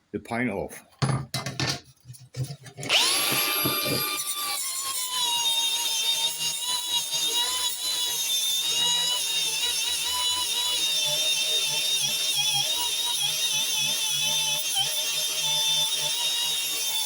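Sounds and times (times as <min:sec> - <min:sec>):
disc grinding metal: 0:02.7 - 0:07.8
electric drill whine: 0:02.9 - 0:17.0.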